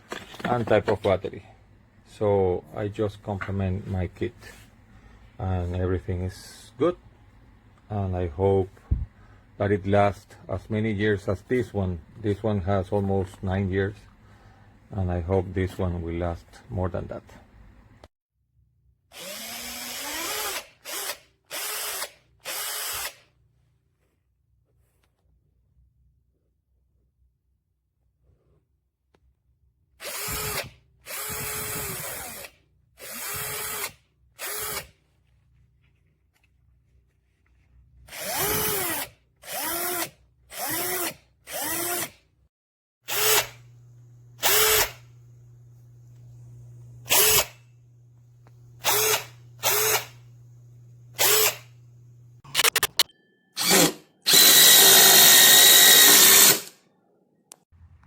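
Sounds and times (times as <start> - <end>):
power tool motor whine: 43.1 - 53.0, 53.6 - 56.7.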